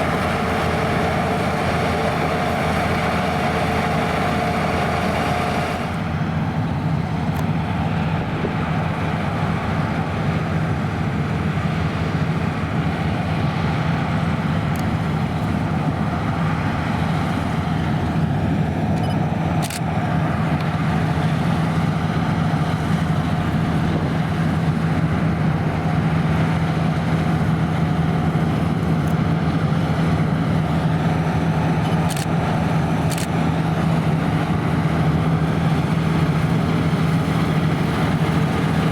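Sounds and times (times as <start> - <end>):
combine harvester engine hum: 0.0 - 38.9
machine noise: 18.9 - 20.0, 29.0 - 38.9.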